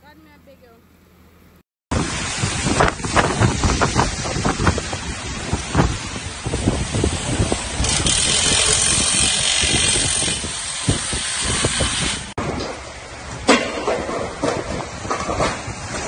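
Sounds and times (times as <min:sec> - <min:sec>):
rain hiss: 0:01.9 - 0:09.9
storm wind buffeting microphone: 0:01.9 - 0:16.0.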